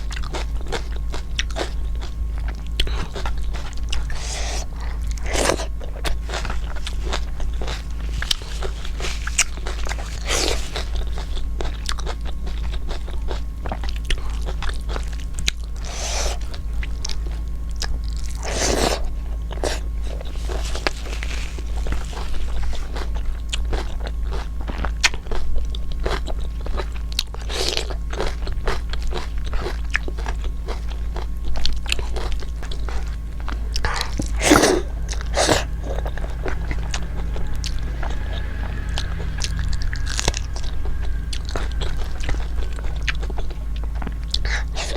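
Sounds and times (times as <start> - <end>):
person chewing crunchy food: 0.0 - 37.8
low hum: 32.4 - 44.9.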